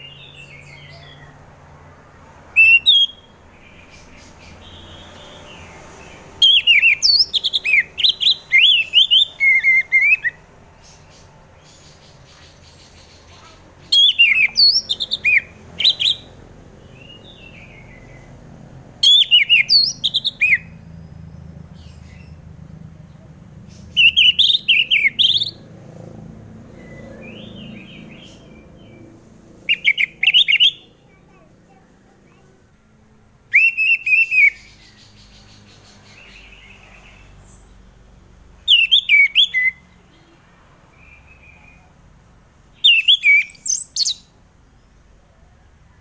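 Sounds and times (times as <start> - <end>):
thrush singing whistled phrases: 2.5 - 3.3, 6.4 - 10.4, 13.9 - 16.3, 19.0 - 20.8, 23.9 - 25.6, 29.7 - 30.9, 33.5 - 34.9, 38.7 - 39.8, 42.8 - 44.3
faint bird chirps: 6.4 - 18.3, 29.7 - 32.5.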